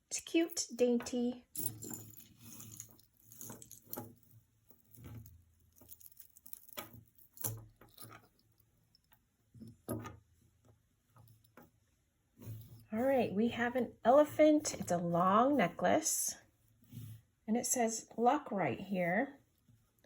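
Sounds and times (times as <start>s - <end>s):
jewelry chains clicking and rattling: 0.4s - 9.1s.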